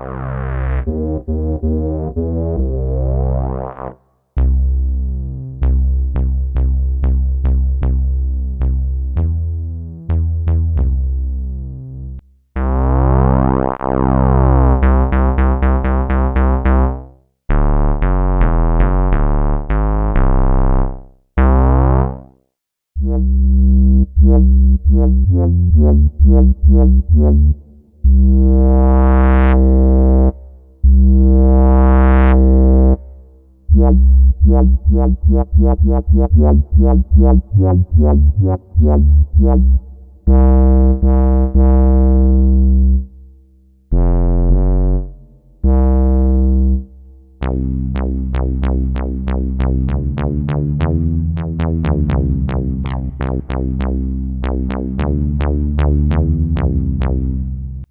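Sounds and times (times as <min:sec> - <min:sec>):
synthesizer bass notes: 0:00.0 - 0:22.3, 0:23.0 - 0:57.9.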